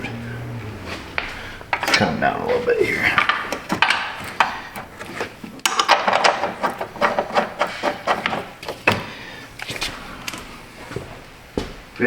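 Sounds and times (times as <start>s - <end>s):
metal parts clicking and scraping: 0.0s - 9.8s.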